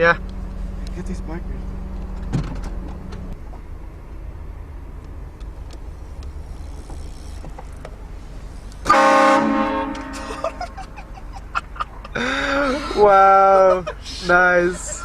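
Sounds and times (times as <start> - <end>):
low car rumble: 0.0 - 15.0
train horn chord blast: 8.9 - 10.3.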